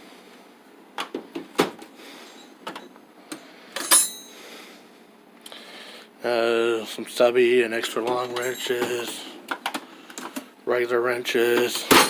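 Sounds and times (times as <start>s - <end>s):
metal tools clinking in a drawer: 3.8s - 4.3s, 8.0s - 9.3s.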